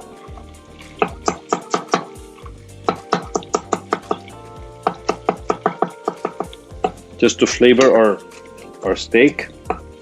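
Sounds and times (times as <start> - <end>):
knife chopping on cutting board: 1.0 - 2.2, 2.9 - 7.0.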